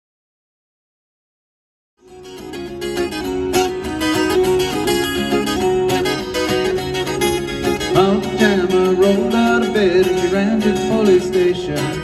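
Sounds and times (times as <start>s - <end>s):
plucked guitar: 2.0s - 12.0s
person singing: 7.7s - 12.0s.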